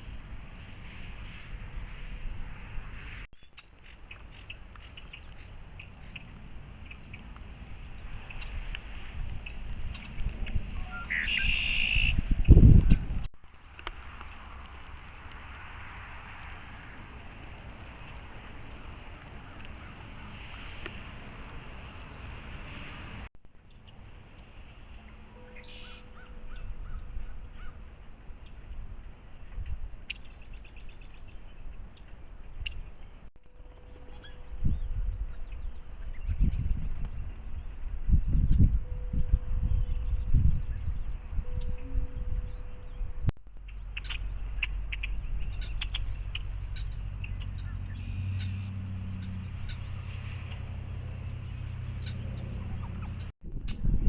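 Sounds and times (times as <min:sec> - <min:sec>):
small birds chirping: 0:03.3 - 0:13.2, 0:23.6 - 0:53.3
harsh bird calls: 0:10.8 - 0:12.7, 0:25.4 - 0:28.7, 0:42.6 - 0:53.3
steady low rumble: 0:32.2 - 0:54.0
high-pitched bird ticking: 0:43.6 - 0:49.9.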